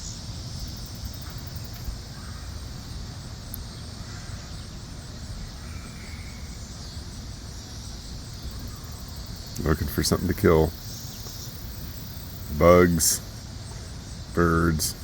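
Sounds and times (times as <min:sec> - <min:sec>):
crickets chirring: 0:00.0 - 0:15.0.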